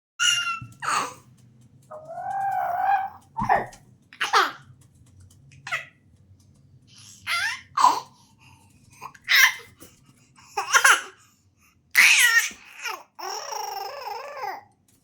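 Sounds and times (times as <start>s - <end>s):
baby babbling: 0.2s - 1.2s, 1.9s - 4.6s, 7.2s - 8.2s, 9.0s - 9.8s, 10.6s - 11.2s, 12.0s - 14.7s
baby laughing and squealing: 0.2s - 1.2s, 1.9s - 4.6s, 7.2s - 8.0s, 9.3s - 9.7s, 12.0s - 14.6s.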